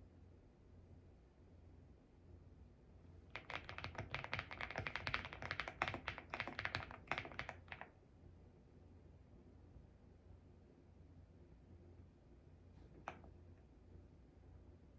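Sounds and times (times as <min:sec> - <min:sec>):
mechanical keyboard typing: 0:03.3 - 0:07.9.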